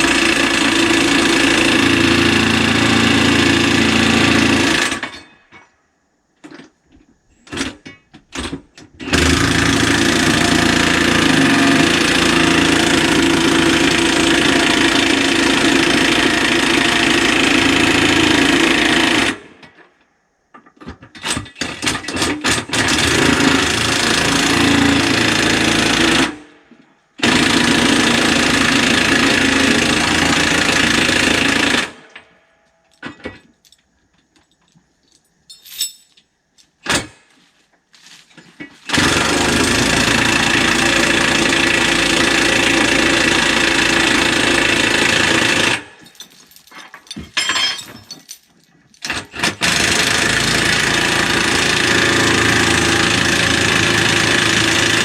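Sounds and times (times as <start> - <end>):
clicks and clinks: 32.7 - 36.7, 46.0 - 49.2.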